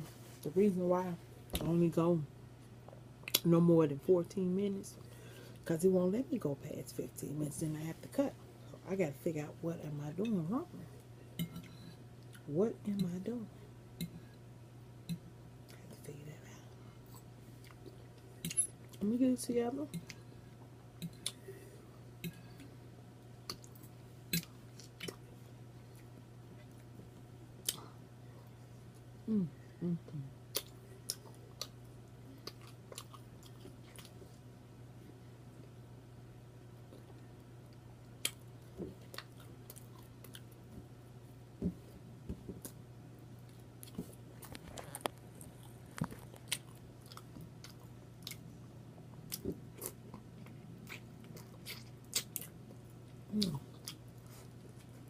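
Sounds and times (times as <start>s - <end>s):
steady low hum: 0.0s - 55.0s
chewing with wet mouth smacks: 32.4s - 34.2s, 43.5s - 48.5s, 49.1s - 55.0s.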